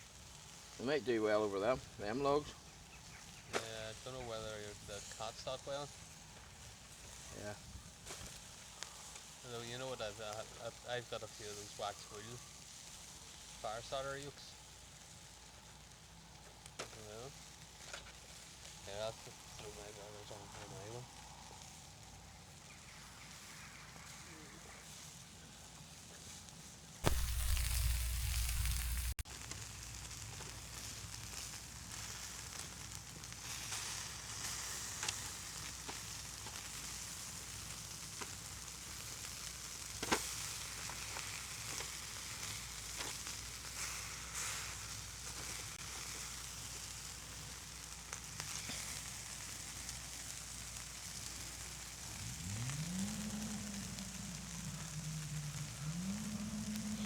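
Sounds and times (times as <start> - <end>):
fire logs hissing and crackling: 0.0 - 57.0
loud rumble: 27.1 - 29.2, 52.0 - 57.0
cow mooing: 52.1 - 57.0.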